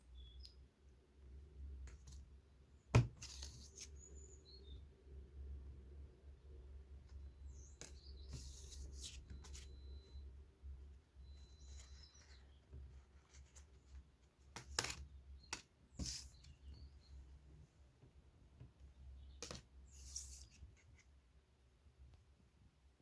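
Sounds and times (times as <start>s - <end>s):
cards rustling: 3.0s - 4.1s.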